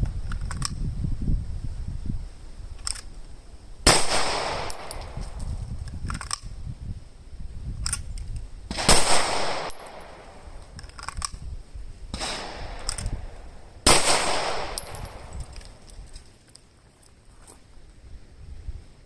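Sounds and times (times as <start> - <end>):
pistol shots with echo: 3.9 - 5.2, 8.7 - 10.5, 12.2 - 15.3.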